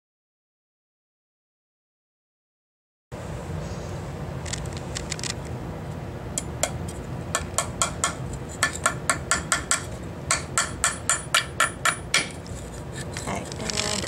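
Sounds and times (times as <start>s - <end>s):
hammer striking nails into wood: 7.4s - 12.4s.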